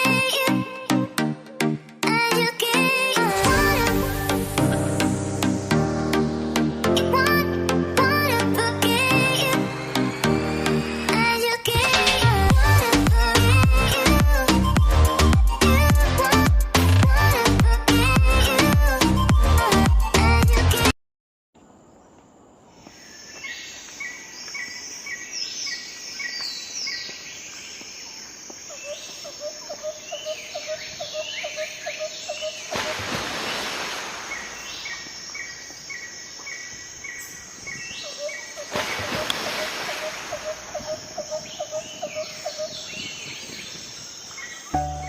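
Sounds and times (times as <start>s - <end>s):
birds chirping and whistling: 40.3s - 45.0s.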